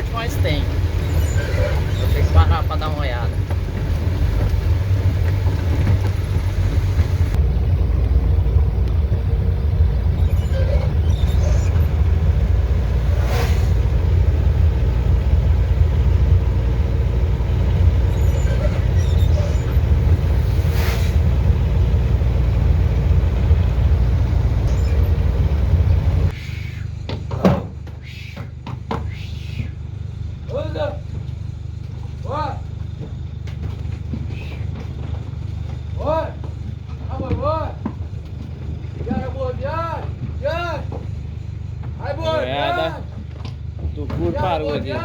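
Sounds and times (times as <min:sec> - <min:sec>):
truck engine rumbling: 0:00.0 - 0:45.0
short hisses: 0:13.1 - 0:13.8, 0:20.5 - 0:21.2.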